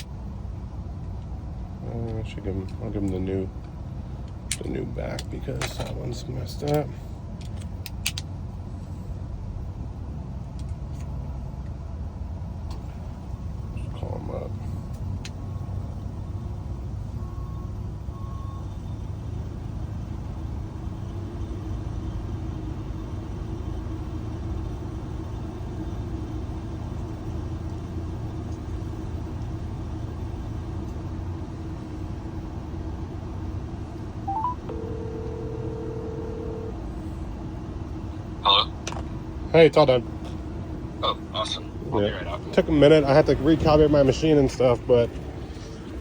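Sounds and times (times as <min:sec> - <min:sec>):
vehicle engine rumble: 0:00.0 - 0:46.0
phone chirp: 0:34.3 - 0:36.8
phone dialing beeps: 0:34.3 - 0:36.8
phone ringback tone: 0:34.3 - 0:36.8.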